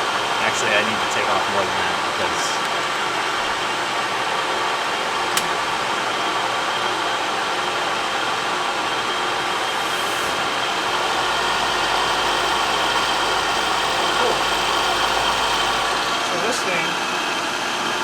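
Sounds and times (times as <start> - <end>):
metal lathe cutting hiss: 7.2 - 17.8
low hum: 9.3 - 16.4.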